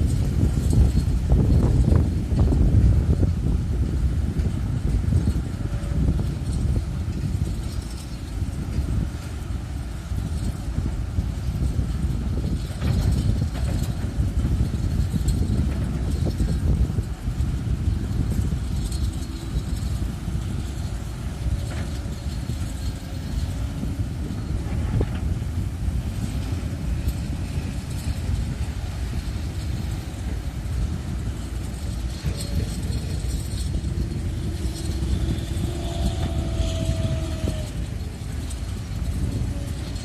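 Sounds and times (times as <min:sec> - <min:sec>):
excavator engine rumbling: 0:00.0 - 0:40.0
faint thin whine: 0:14.7 - 0:40.0.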